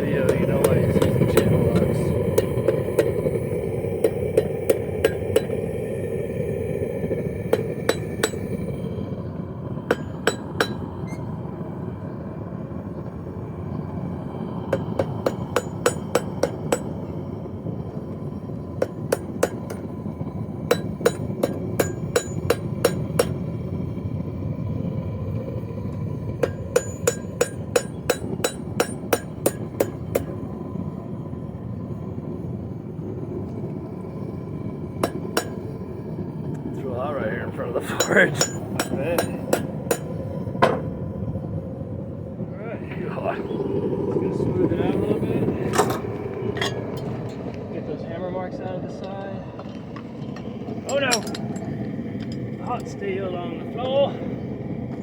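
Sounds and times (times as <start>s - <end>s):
forge rumble: 0.0s - 55.0s
hammer striking steel on anvil: 0.2s - 6.0s, 7.5s - 8.6s, 9.9s - 10.9s, 14.7s - 17.0s, 18.8s - 19.9s, 20.7s - 23.5s, 26.4s - 30.4s, 35.0s - 35.7s, 37.9s - 40.9s.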